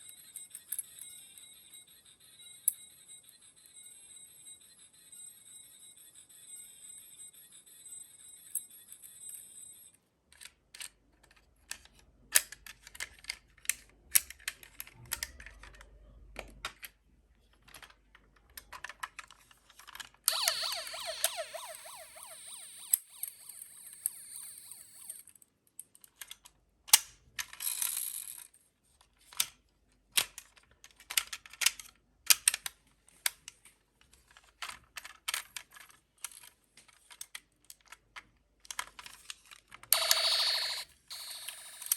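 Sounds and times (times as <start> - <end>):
toy cars clicking and clacking: 8.1 - 17.0, 17.6 - 21.6, 30.2 - 33.5, 34.1 - 41.9
toy siren wailing: 20.3 - 25.2, 40.0 - 41.9.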